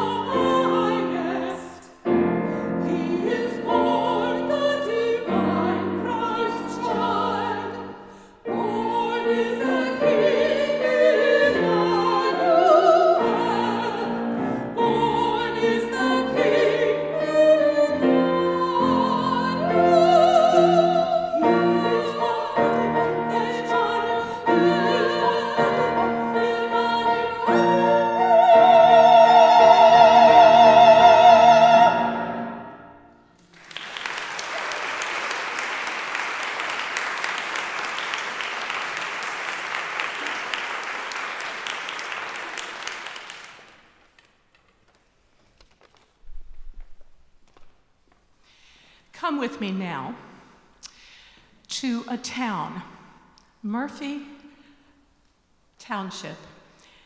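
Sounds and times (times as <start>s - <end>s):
women singing operatic duet: 0.0s - 32.3s
piano accompaniment: 0.0s - 33.3s.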